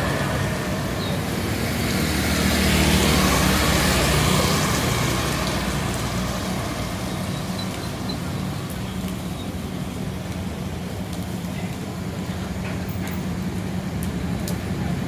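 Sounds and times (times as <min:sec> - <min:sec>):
vehicle passing: 0:00.0 - 0:09.3
steady traffic hiss: 0:00.0 - 0:15.0
vehicle engines running: 0:00.0 - 0:15.0.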